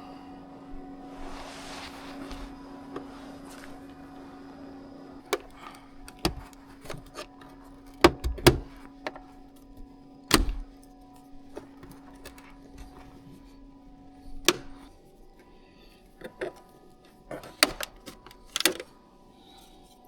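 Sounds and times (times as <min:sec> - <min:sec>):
steady low hum: 0:00.0 - 0:20.0
tools clicking and knocking: 0:05.3 - 0:09.2, 0:17.4 - 0:18.9.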